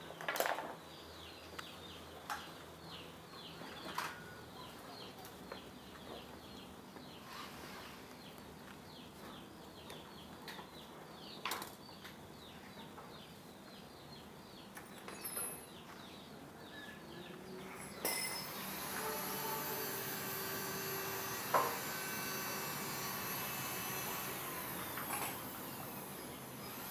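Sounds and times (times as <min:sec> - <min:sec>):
mechanical whir: 0:18.4 - 0:26.9.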